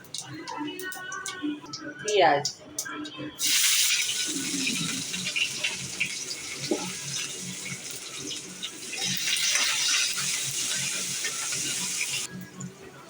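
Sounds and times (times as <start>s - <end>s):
onions sizzling in hot oil: 3.4s - 12.3s.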